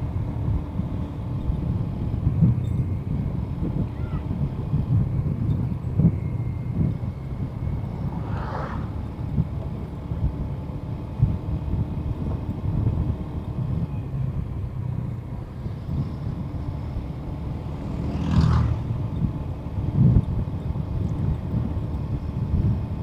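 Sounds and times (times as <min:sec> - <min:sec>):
wind buffeting and engine: 0:00.0 - 0:23.0
wind whoosh: 0:07.3 - 0:09.6.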